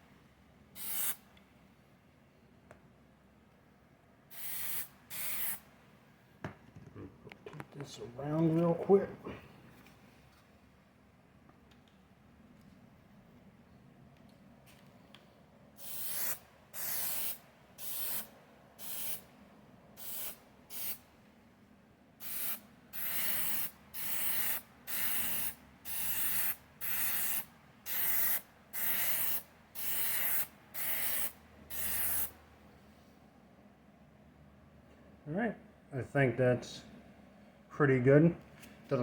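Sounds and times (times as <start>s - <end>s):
spray paint can hissing: 0.8s - 1.2s, 4.3s - 5.6s, 15.8s - 19.2s, 20.0s - 21.0s, 22.2s - 32.3s.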